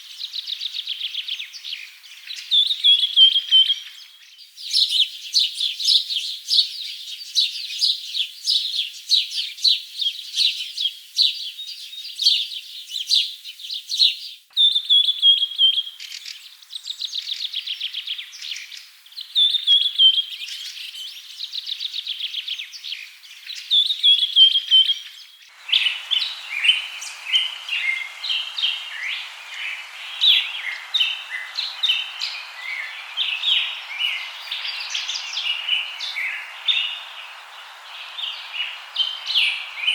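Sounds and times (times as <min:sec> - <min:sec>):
birds chirping and trilling: 0:22.7 - 0:39.9
steady background hiss: 0:24.0 - 0:39.9.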